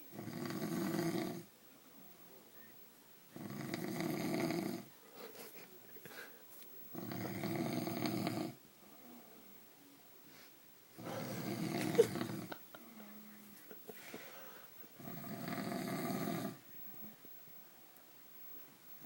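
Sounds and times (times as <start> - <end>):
man snoring: 0.1 - 1.5, 3.4 - 4.9, 6.9 - 8.6, 11.0 - 12.6, 15.0 - 16.6.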